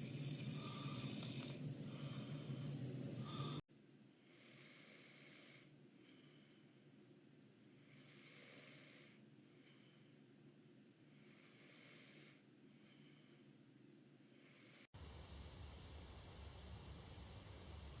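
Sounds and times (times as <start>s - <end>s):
loud steady hum: 0.0s - 3.6s
man snoring: 0.0s - 3.6s, 7.9s - 9.2s.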